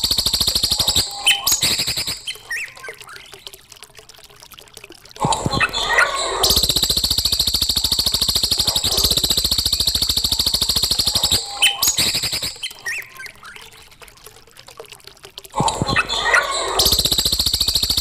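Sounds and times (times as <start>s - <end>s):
bird rattling trill: 0.0s - 2.7s, 5.9s - 13.1s, 16.7s - 18.0s
bird chirps: 0.1s - 3.3s, 5.8s - 13.7s.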